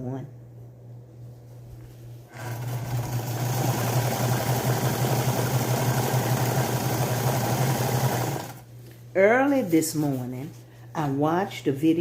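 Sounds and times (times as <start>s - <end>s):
electric sewing machine running: 2.3s - 8.7s.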